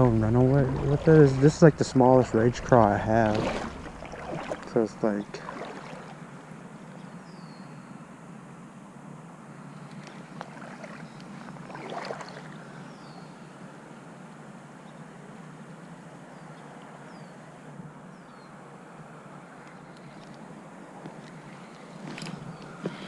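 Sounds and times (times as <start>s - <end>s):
water splashing swish: 0.0s - 6.3s, 10.0s - 12.6s
flowing river water: 0.0s - 7.0s, 9.7s - 14.2s, 18.6s - 23.0s.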